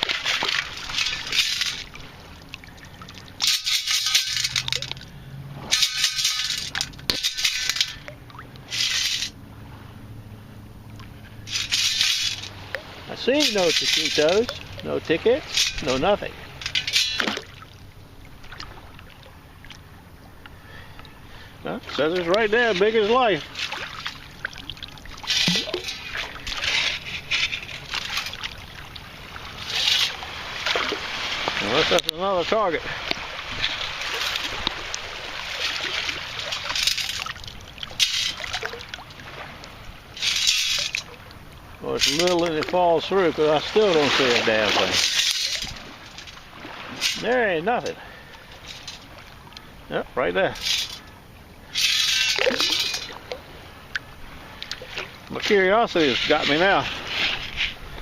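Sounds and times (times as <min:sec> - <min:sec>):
water and sand sloshing: 0:00.0 - 0:58.0
sand sifting through metal scoop: 0:08.7 - 0:09.4, 0:11.5 - 0:12.5, 0:13.2 - 0:14.5.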